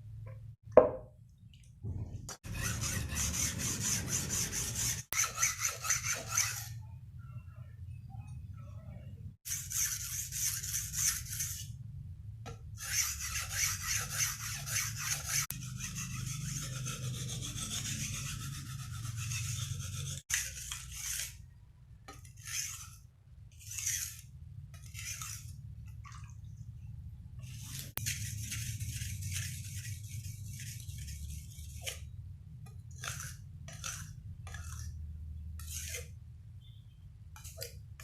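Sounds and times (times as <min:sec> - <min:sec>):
abrasive scrubbing on knife blade: 0:02.4 - 0:06.8, 0:09.5 - 0:11.8, 0:12.8 - 0:21.4, 0:22.1 - 0:23.0, 0:23.6 - 0:25.6, 0:27.4 - 0:32.2, 0:33.0 - 0:35.0, 0:35.6 - 0:36.2.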